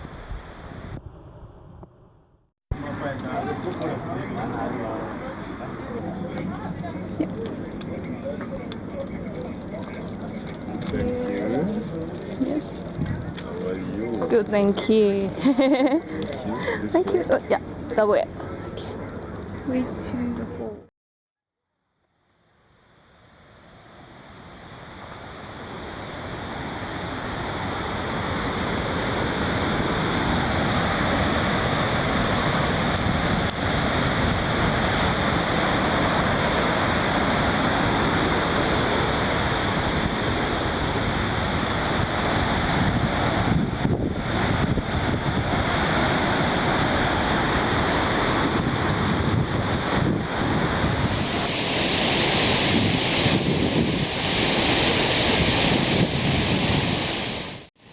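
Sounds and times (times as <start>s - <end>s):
wind buffeting microphone: 10.8s - 15.4s, 29.2s - 57.6s
waterfall roaring: 24.8s - 57.7s.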